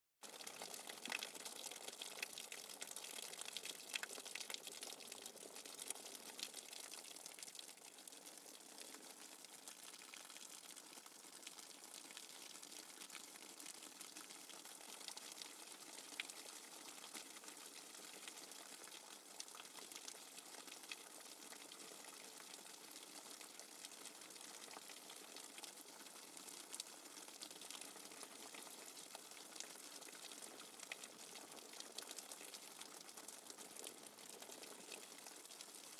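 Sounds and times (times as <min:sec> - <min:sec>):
rainwater dripping: 0:00.3 - 0:09.3.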